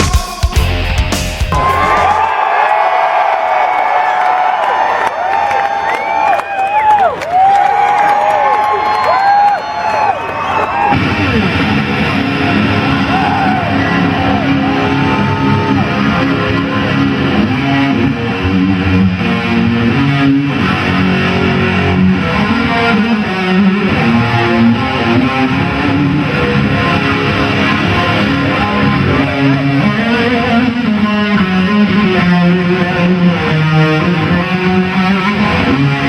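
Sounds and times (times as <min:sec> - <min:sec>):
distorted electric guitar rock: 0:00.0 - 0:02.2, 0:10.8 - 0:36.0.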